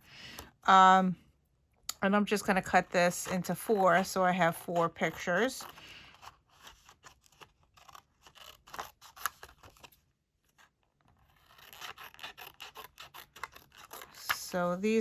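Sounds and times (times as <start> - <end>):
scissors snipping paper: 2.4 - 9.9, 10.5 - 14.7.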